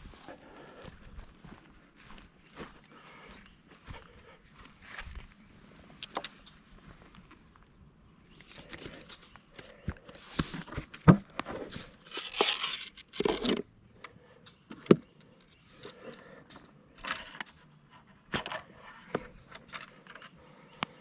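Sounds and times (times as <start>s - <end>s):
rustling and scraping: 8.4s - 13.7s, 14.7s - 20.6s.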